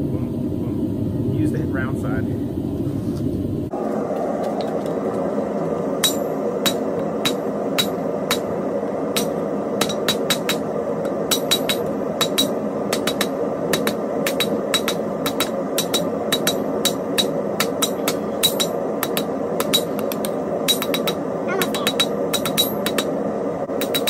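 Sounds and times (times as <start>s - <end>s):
steady background rush: 0.0s - 24.0s
hammer ringing on anvil: 6.0s - 8.5s, 9.2s - 23.2s, 23.8s - 24.0s.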